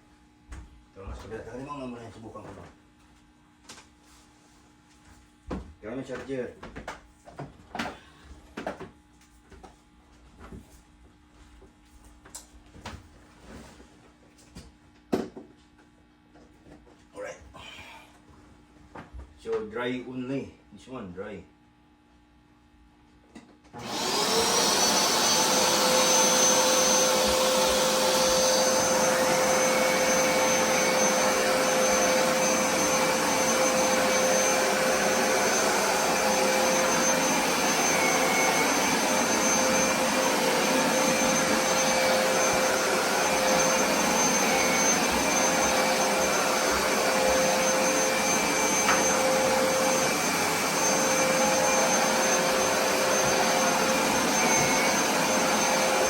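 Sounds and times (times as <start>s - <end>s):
carpet cleaner motor whining: 23.8s - 56.0s
suction noise: 23.8s - 56.0s.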